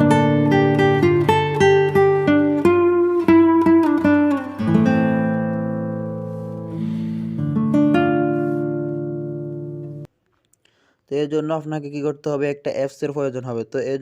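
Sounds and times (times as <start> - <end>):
acoustic guitar picking and strumming: 0.0 - 10.1.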